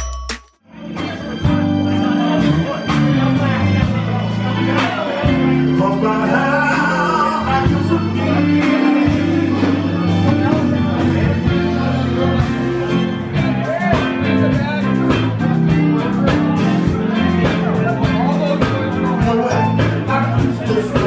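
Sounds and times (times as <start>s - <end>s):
drum beat: 0.0s - 0.6s
electric guitar: 0.7s - 21.0s
person singing: 0.7s - 21.0s.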